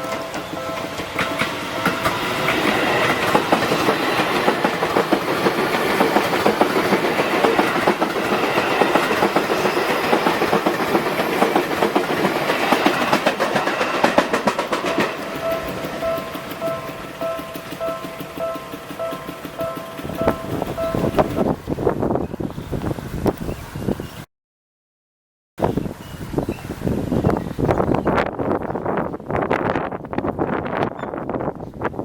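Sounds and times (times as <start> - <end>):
level crossing warning bell: 0.0 - 4.9, 14.8 - 21.5
train wheels clattering over rails: 0.0 - 21.6.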